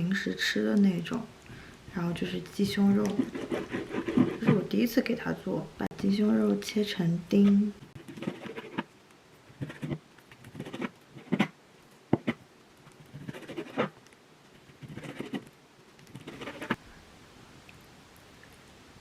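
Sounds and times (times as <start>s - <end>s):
knife cutting on a cutting board: 7.4s - 8.9s, 13.1s - 13.9s, 16.2s - 16.8s.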